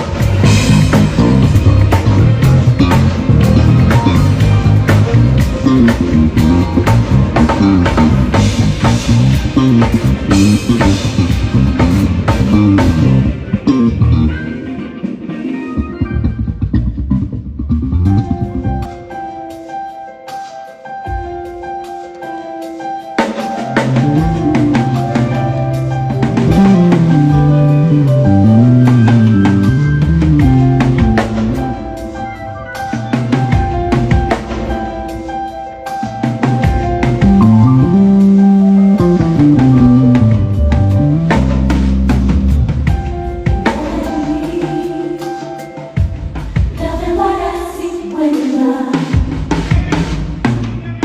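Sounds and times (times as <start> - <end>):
drum kit steady beat: 0.0 - 14.2, 18.1 - 51.0
bass guitar line: 0.0 - 19.4, 23.7 - 44.3
held chords: 0.0 - 47.6.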